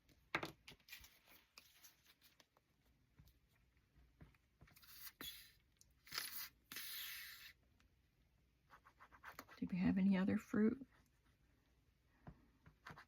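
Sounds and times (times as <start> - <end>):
paper rustling: 0.6 - 3.4.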